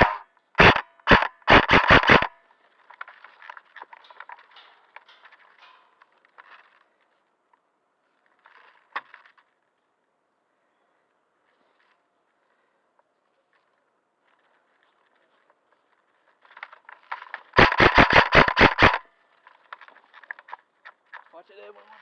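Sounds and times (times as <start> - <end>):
airsoft gun shots: 0.0 - 2.4, 17.6 - 19.0
faint scraping and rustling: 2.4 - 17.6, 19.0 - 22.0
sharp click: 17.6 - 19.0.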